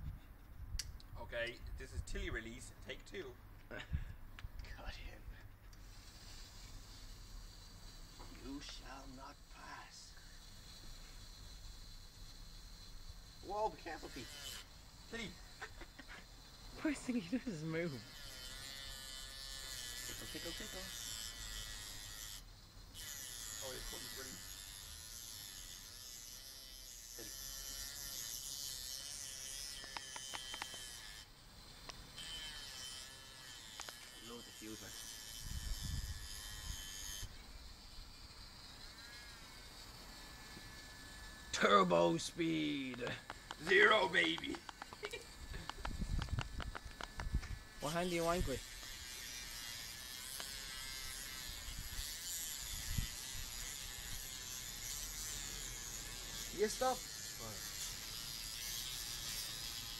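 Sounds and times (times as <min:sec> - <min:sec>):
rotary tool grinding metal: 0:04.8 - 0:59.9
sharp clicks: 0:42.9 - 0:47.6.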